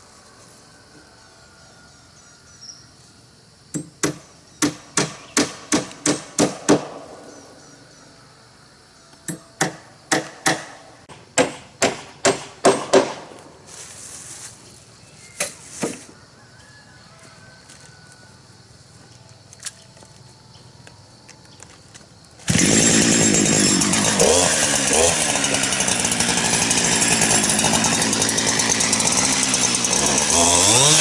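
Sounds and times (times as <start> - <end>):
hammer striking wood: 3.7 - 7.0, 9.3 - 10.8, 11.4 - 13.4.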